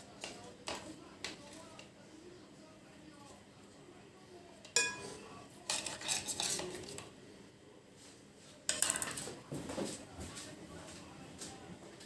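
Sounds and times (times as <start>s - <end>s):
cutlery and dishes clattering: 4.6s - 7.1s, 8.7s - 10.0s
scraping of dishes: 4.8s - 7.0s.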